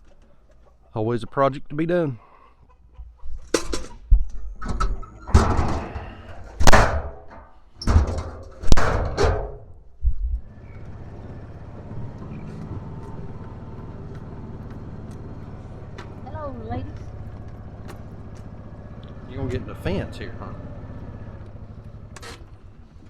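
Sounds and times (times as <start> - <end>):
metal gate banging and clattering: 4.6 - 9.8
vehicle engine running: 8.1 - 23.0.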